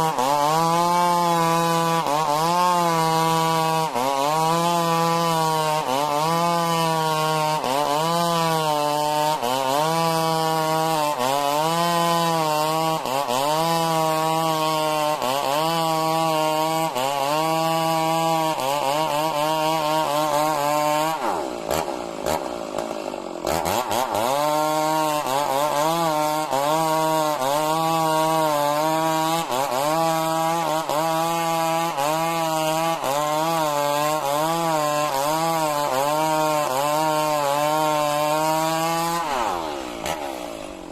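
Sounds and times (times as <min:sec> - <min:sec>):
chainsaw cutting timber: 0:00.0 - 0:40.9.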